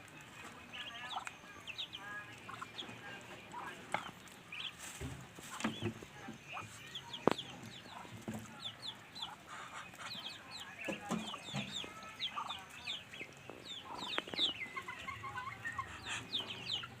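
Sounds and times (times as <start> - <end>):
ducklings peeping: 0.0 - 17.0.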